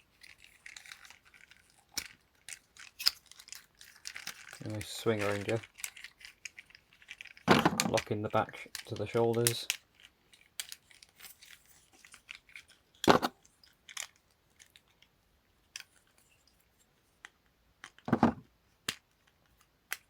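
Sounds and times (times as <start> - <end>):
plastic toy parts clicking: 0.1 - 15.1, 15.7 - 16.2, 17.2 - 18.2, 18.8 - 20.0
plastic knocks: 7.5 - 8.0, 18.1 - 18.4.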